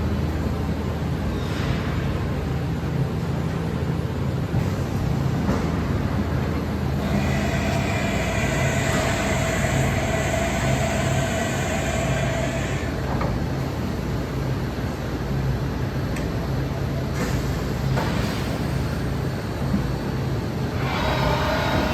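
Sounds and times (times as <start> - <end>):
machining center humming: 3.0 - 17.9, 18.5 - 21.9
multi-tone machine whine: 6.8 - 15.7, 20.5 - 21.9.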